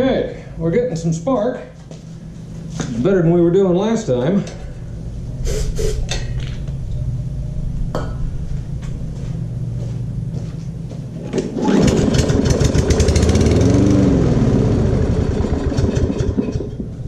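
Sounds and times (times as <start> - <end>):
low hum: 0.0 - 17.0
lawn mower engine running: 11.1 - 17.0.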